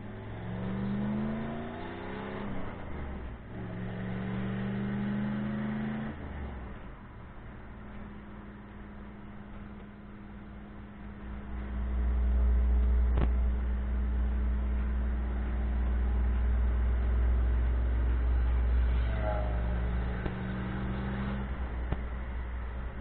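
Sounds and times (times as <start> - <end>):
car engine and exhaust rumble: 0.0 - 23.0.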